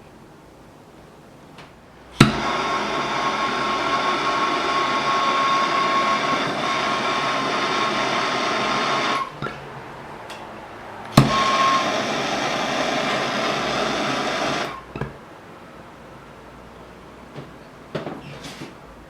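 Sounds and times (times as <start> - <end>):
torch flame hissing: 2.1 - 9.3, 11.1 - 14.9
faint steady whistle: 2.2 - 9.3, 11.0 - 14.9
gas torch igniting pop: 2.2 - 9.5, 11.1 - 15.1.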